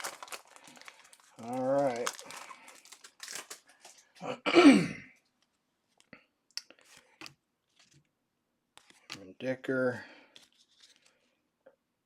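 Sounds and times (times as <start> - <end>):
man clearing his throat: 4.2 - 5.1.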